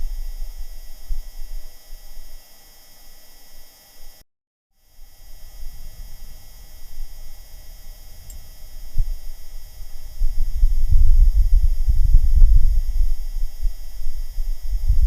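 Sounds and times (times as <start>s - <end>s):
wind buffeting microphone: 5.3s - 15.0s.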